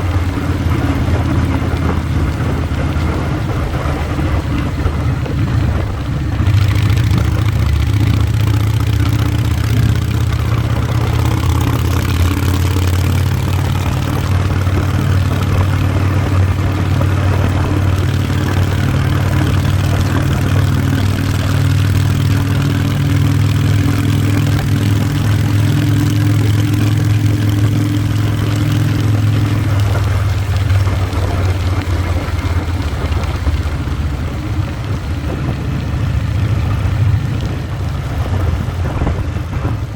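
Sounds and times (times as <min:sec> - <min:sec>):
road and wind noise: 0:00.0 - 0:39.9
vehicle engine running: 0:00.0 - 0:39.9.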